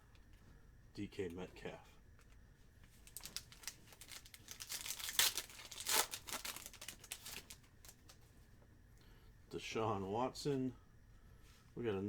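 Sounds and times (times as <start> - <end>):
foil wrapper crinkling: 2.9 - 8.2
foil wrapper ripping: 3.0 - 8.1.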